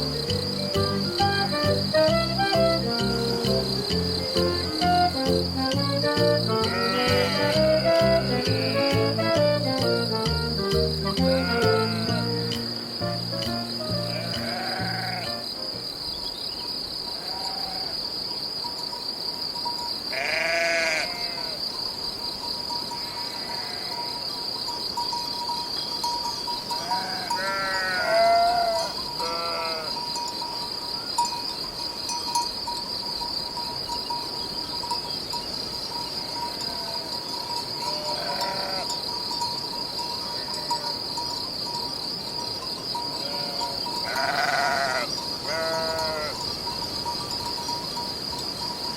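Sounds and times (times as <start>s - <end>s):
high-pitched insect chorus: 0.0s - 48.9s
sheep or goats bleating: 6.6s - 9.4s, 11.2s - 12.3s, 14.0s - 15.4s, 17.2s - 17.9s, 20.1s - 21.6s, 23.0s - 24.0s, 26.8s - 30.0s, 37.9s - 39.0s, 43.2s - 46.4s.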